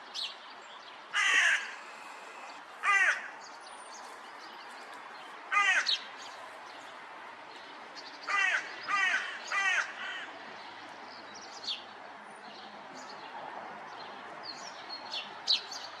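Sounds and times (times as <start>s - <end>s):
crow cawing: 1.2s - 3.4s, 5.5s - 6.0s, 8.3s - 10.3s.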